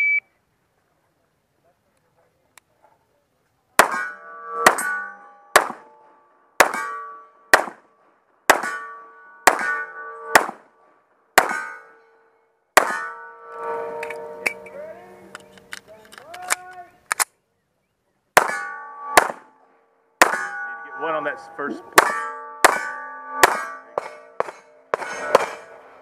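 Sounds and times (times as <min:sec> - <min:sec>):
steel target ringing: 0:03.8 - 0:07.8, 0:08.5 - 0:10.8, 0:11.4 - 0:15.0, 0:18.4 - 0:26.0
gunshots: 0:03.8 - 0:10.8, 0:11.4 - 0:11.8, 0:12.8 - 0:13.1, 0:18.4 - 0:26.0.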